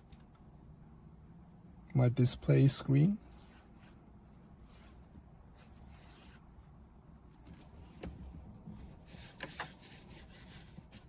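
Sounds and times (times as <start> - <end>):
soft brushing on screen: 3.0 - 6.8.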